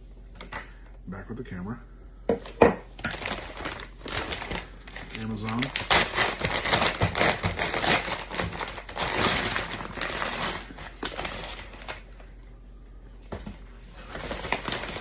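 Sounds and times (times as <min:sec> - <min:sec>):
packaging crinkling: 0:03.0 - 0:12.3, 0:14.0 - 0:15.0.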